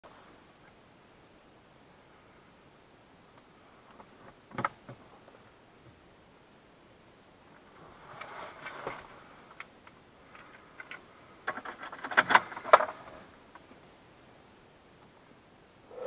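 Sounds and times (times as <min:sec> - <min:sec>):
soft rustle: 0:07.4 - 0:14.0.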